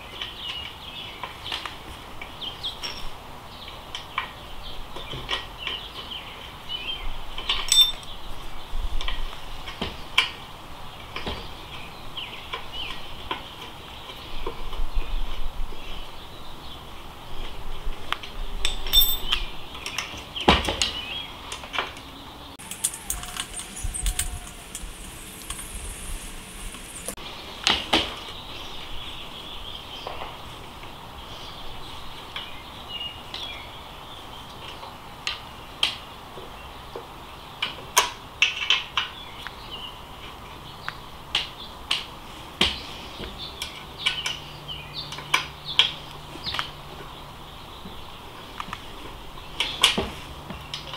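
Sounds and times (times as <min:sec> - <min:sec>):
rustling: 0:22.6 - 0:29.3.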